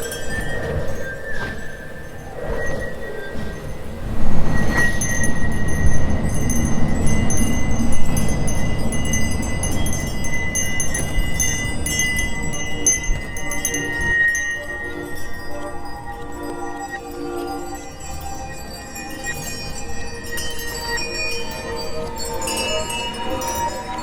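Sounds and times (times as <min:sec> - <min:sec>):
tinkling chimes: 0:00.0 - 0:24.0
held high tone: 0:04.3 - 0:24.0.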